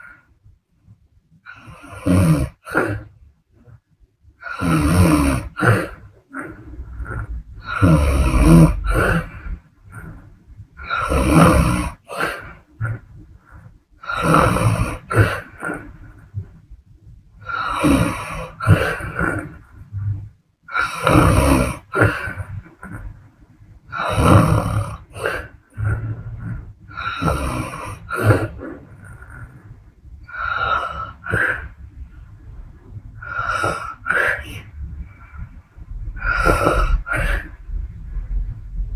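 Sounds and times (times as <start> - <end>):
quiet breathing: 0.0 - 38.9
woman snoring: 1.5 - 3.1, 4.4 - 10.2, 10.8 - 13.0, 14.0 - 15.9, 17.4 - 19.7, 20.7 - 23.1, 23.9 - 29.6, 30.3 - 31.7, 33.2 - 34.7, 36.2 - 37.6.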